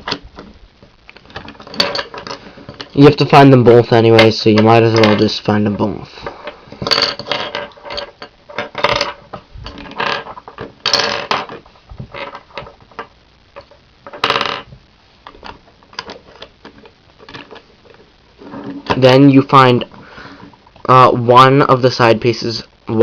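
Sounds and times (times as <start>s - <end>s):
plastic puzzle pieces clattering: 1.2s - 3.0s, 6.8s - 11.6s, 12.2s - 14.7s.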